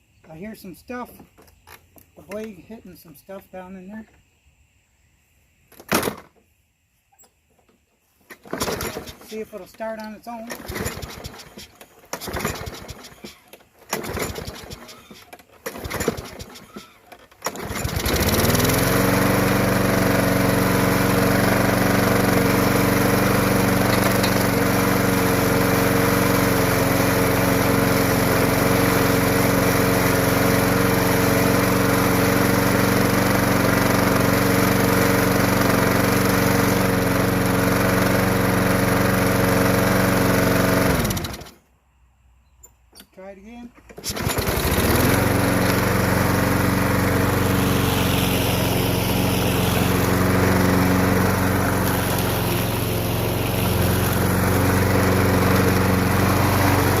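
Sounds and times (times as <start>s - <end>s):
lawn mower engine running: 8.2s - 41.7s, 43.8s - 57.0s
mower starter cord pulls: 8.3s - 25.2s, 33.0s - 41.6s, 43.8s - 57.0s.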